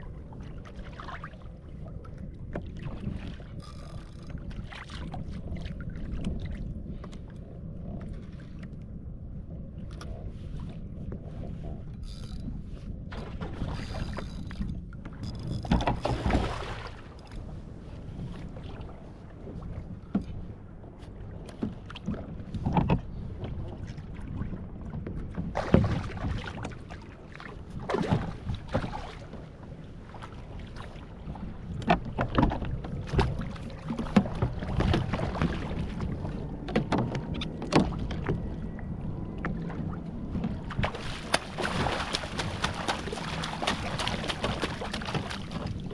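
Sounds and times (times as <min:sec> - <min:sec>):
wind rumble on microphone: 0:00.0 - 0:45.9
water splashing against kayak hull: 0:10.4 - 0:45.9.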